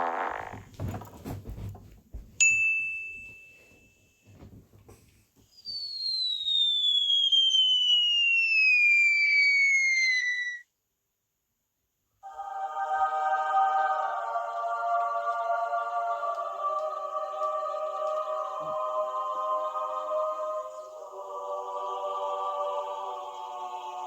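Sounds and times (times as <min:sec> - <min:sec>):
bright ding: 0:02.4 - 0:04.0
falling whistle: 0:05.5 - 0:10.6.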